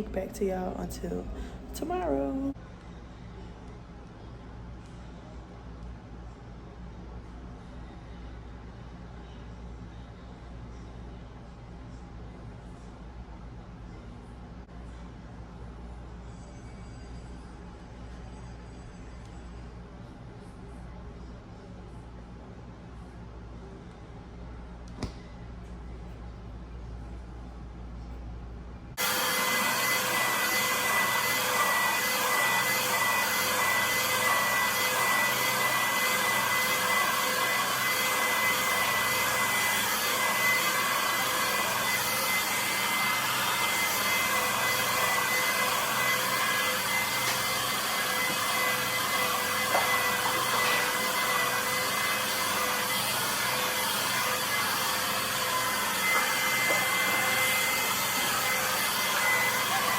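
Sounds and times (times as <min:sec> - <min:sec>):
hair dryer blowing: 0:00.0 - 0:02.5, 0:29.0 - 0:59.9.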